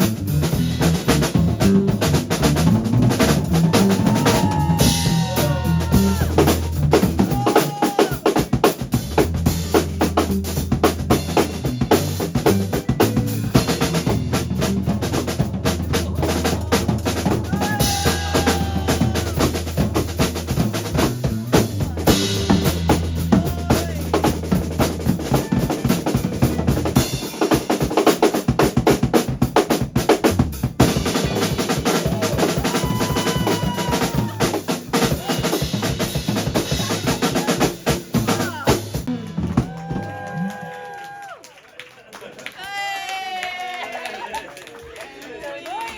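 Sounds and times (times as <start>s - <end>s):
held bass line: 0.0s - 40.8s
drum kit beat: 0.0s - 41.2s
bending melody notes: 9.4s - 27.2s, 39.1s - 39.8s.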